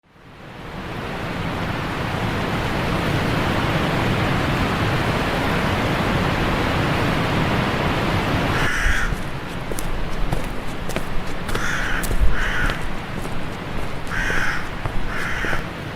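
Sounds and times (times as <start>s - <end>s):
steady rushing noise: 0.1s - 15.9s
harsh crow-like bird call: 8.5s - 9.2s, 11.6s - 12.9s, 14.1s - 15.7s.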